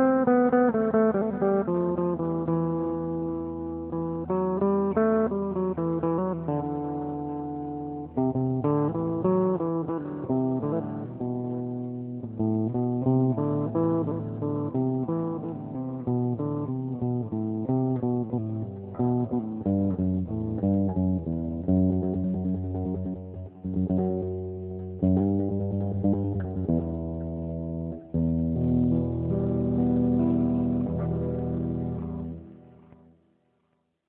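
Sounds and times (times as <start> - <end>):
picked guitar notes: 0.0 - 33.2
bass line: 19.0 - 32.9.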